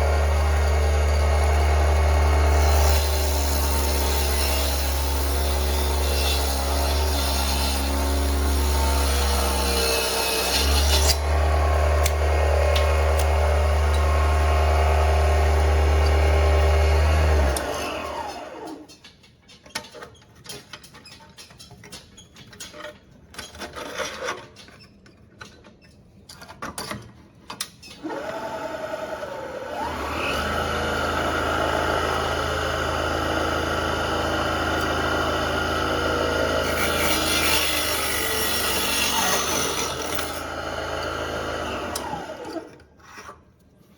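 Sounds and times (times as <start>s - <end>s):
table saw motor running: 0.0s - 18.8s, 28.1s - 42.8s.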